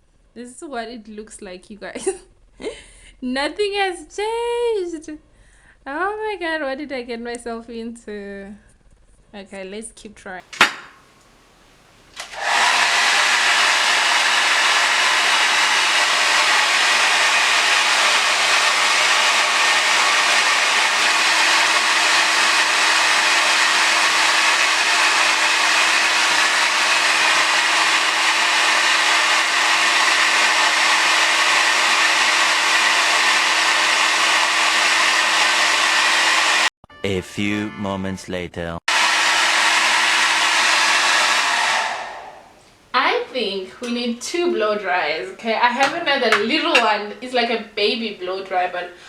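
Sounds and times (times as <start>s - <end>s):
hair dryer running: 10.4s - 36.7s, 38.9s - 44.1s, 45.0s - 49.0s.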